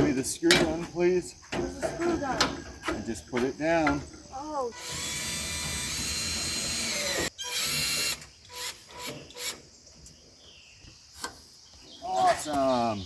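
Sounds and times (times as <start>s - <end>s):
cordless screw gun whining: 4.8s - 9.6s.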